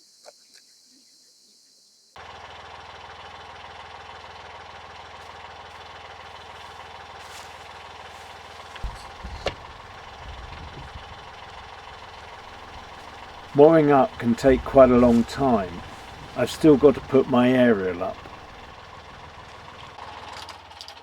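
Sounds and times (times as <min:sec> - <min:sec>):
boat engine idling: 0:02.2 - 0:20.4
sharp knocks: 0:08.8 - 0:17.3.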